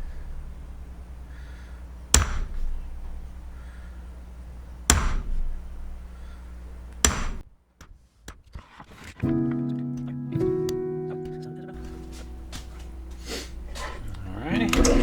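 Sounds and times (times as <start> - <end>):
steady low hum: 0.0 - 7.4, 10.4 - 15.0
hammer striking a punch: 2.1 - 2.7, 4.9 - 5.7, 7.0 - 7.4.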